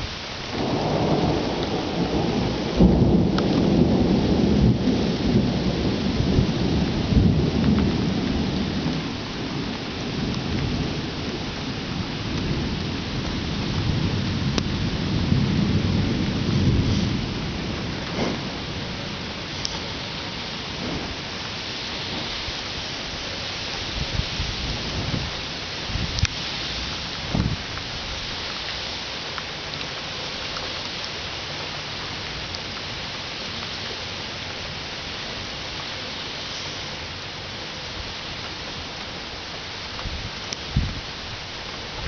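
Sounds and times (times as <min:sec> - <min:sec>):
thunder rumbling and cracking: 0:00.0 - 0:28.5
rain hiss: 0:00.0 - 0:42.0.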